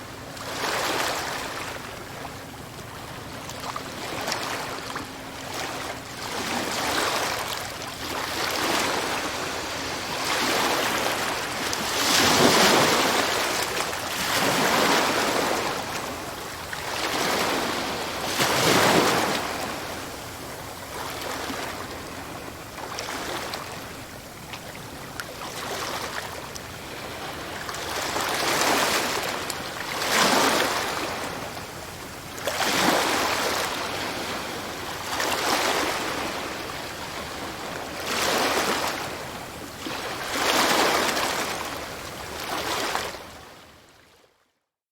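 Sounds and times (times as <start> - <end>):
ocean waves crashing on shore: 4.0 - 23.8, 32.4 - 43.3.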